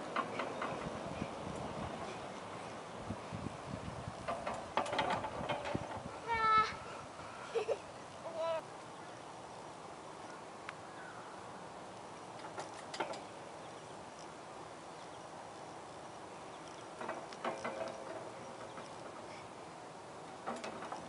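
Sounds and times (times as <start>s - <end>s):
outdoor background hiss: 0.0s - 21.0s
short clicks and knocks: 16.7s - 19.3s.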